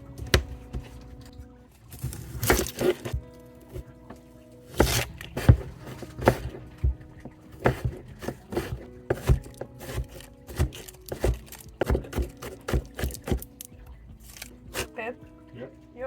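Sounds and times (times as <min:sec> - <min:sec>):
knocks and scrapes of food preparation: 0:00.0 - 0:15.0
faint steady background tones: 0:00.0 - 0:16.0.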